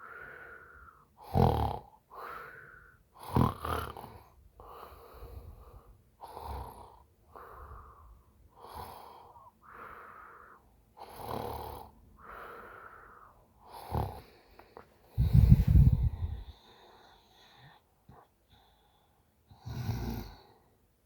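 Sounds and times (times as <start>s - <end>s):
woman snoring: 3.2s - 4.2s, 11.0s - 11.9s, 13.7s - 14.3s, 19.6s - 20.5s.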